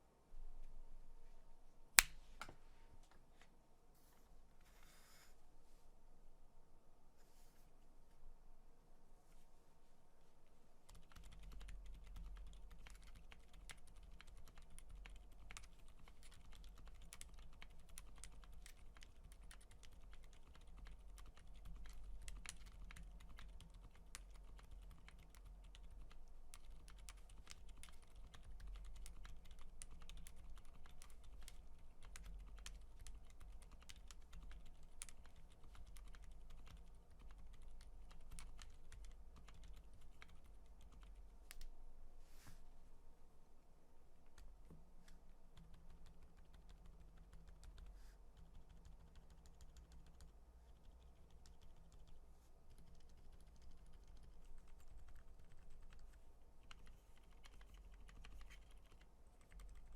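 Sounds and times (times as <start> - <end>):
soft muted keyboard typing: 10.8 - 41.8, 44.2 - 59.9.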